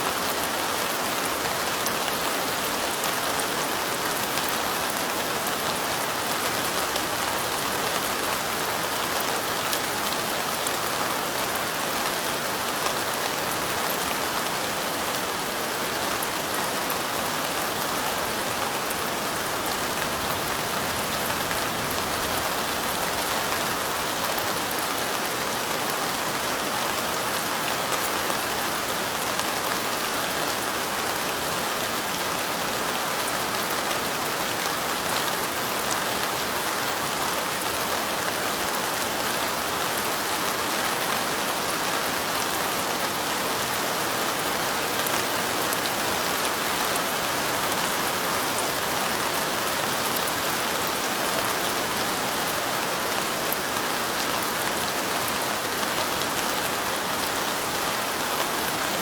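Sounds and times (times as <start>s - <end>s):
light rain: 0.0s - 59.0s.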